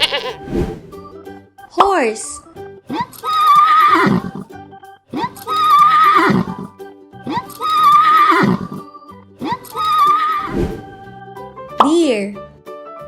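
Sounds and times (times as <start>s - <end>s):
horse whinnying: 0.0s - 0.4s, 3.5s - 4.4s, 5.6s - 6.6s, 7.7s - 8.9s
background music: 0.0s - 13.0s.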